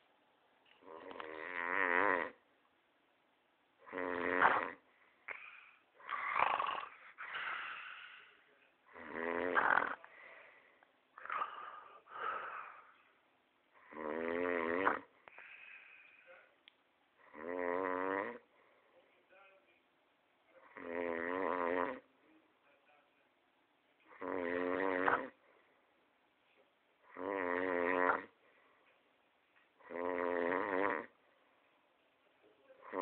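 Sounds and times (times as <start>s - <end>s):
man snoring loudly: 0.8s - 2.4s, 3.8s - 4.8s, 8.9s - 10.0s, 13.8s - 15.1s, 17.2s - 18.4s, 20.7s - 22.0s, 24.1s - 25.3s, 27.1s - 28.3s, 29.8s - 31.1s
soft breathing: 4.8s - 6.2s, 6.8s - 8.8s, 10.0s - 13.2s, 15.2s - 16.6s, 18.5s - 19.2s.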